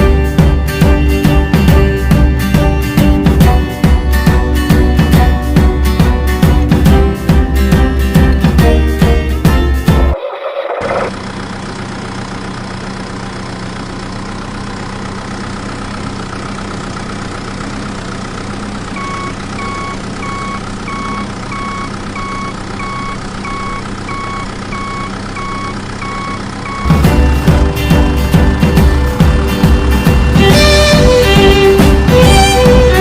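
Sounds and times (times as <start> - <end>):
vehicle motor humming: 0.0 - 33.0
reversing alarm beeping: 19.0 - 27.2.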